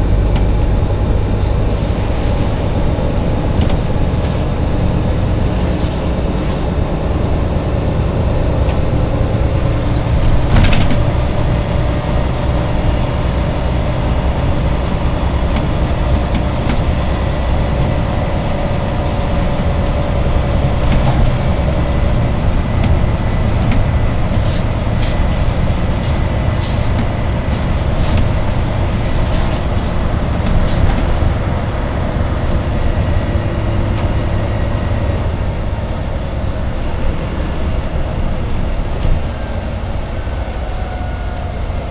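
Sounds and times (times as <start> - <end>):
bus engine and road rumble: 0.0 - 41.9
bodywork rattles and clicks: 20.7 - 28.5.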